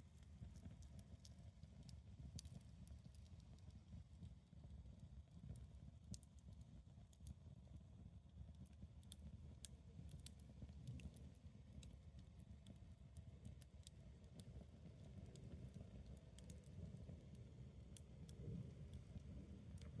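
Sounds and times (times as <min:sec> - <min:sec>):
campfire crackling and popping: 0:00.0 - 0:20.0
low steady rumble: 0:08.2 - 0:20.0.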